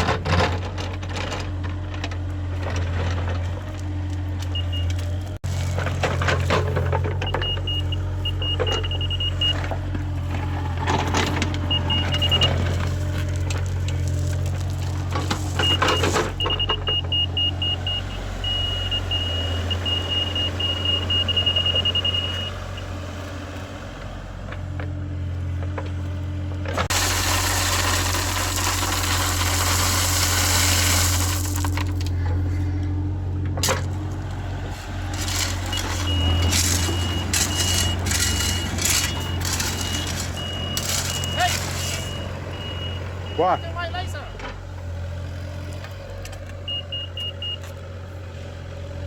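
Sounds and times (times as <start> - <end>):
heavy equipment engine running: 0.0 - 49.0
backup alarm beeping: 4.5 - 4.9, 7.2 - 9.8, 11.7 - 12.7, 15.6 - 22.9, 35.2 - 44.4, 46.7 - 47.7.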